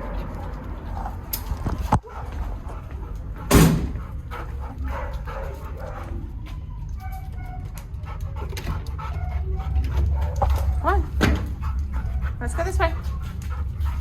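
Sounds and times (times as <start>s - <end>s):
dog barking: 2.0s - 2.5s, 4.8s - 6.2s
steady low hum: 7.8s - 14.0s.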